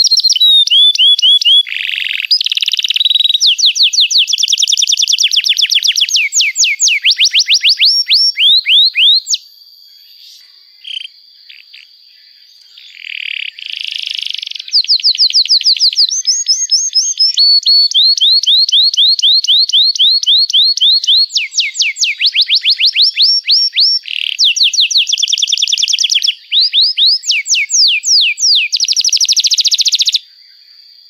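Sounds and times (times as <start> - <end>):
canary singing: 0.0 - 11.9, 12.6 - 30.2
faint steady high tone: 8.3 - 13.0.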